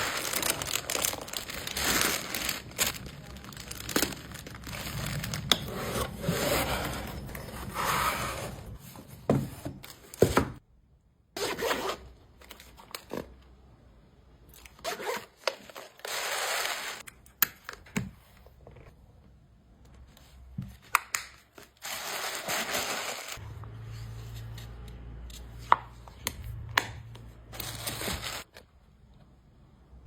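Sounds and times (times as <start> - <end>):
plastic packaging rustling: 0.0 - 7.6.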